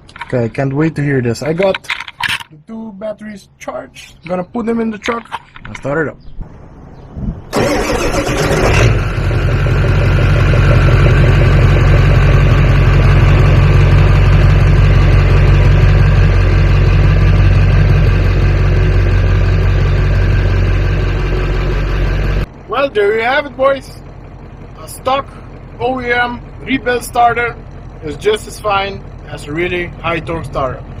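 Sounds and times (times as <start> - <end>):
diesel engine cranking: 7.5 - 31.0
diesel engine idling: 7.5 - 31.0.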